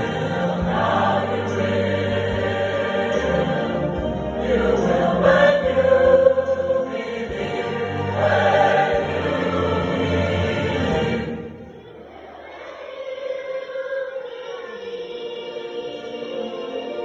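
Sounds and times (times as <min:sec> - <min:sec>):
choir singing: 0:00.0 - 0:17.0.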